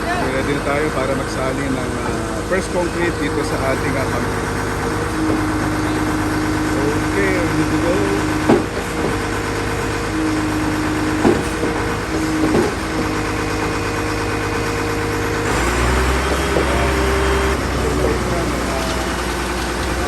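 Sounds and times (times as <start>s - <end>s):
truck diesel engines running: 0.0s - 20.0s
sharp knocks: 8.2s - 14.0s.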